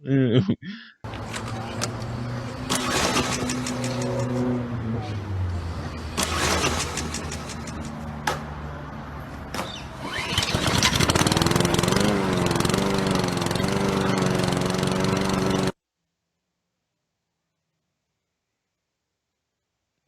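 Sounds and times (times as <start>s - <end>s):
lawn mower engine running: 1.0s - 15.8s.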